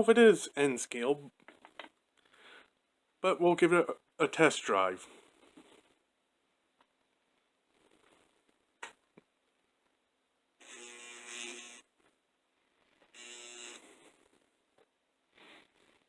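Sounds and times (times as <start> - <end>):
small motor electric buzzes: 10.6 - 11.9, 13.1 - 14.0.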